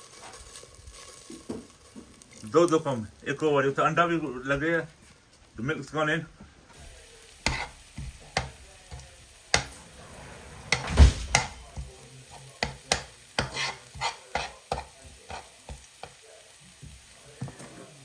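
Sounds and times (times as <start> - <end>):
onions sizzling in a frying pan: 0.0 - 18.0
utensil scraping and knocking pan: 7.4 - 16.2.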